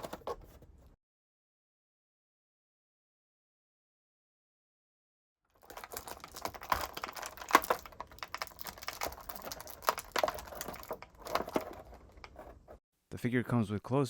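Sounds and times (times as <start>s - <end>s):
packaging clicking and crinkling: 5.6s - 12.8s.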